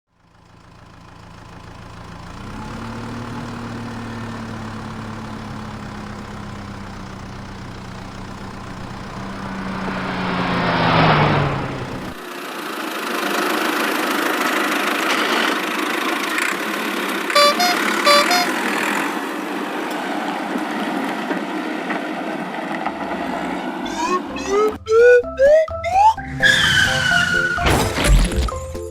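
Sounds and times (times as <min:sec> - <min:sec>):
higher engine-like rumble: 0:00.2 - 0:12.2, 0:17.3 - 0:19.2, 0:22.8 - 0:25.2
cartoon engine hum: 0:02.8 - 0:12.2, 0:17.4 - 0:19.0, 0:23.8 - 0:28.5
short beeps: 0:17.4 - 0:18.6.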